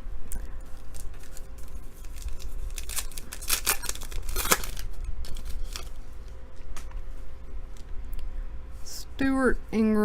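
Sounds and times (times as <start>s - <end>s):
foil wrapper tearing and crinkling: 0.8s - 6.0s.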